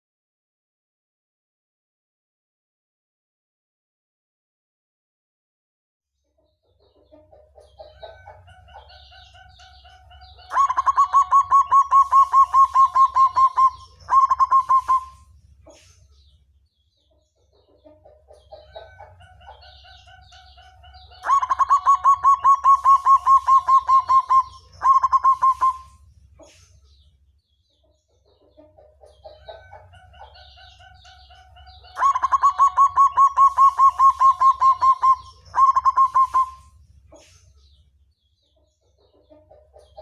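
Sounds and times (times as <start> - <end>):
dove cooing and singing: 7.6 - 15.8, 18.4 - 26.6, 29.1 - 37.3.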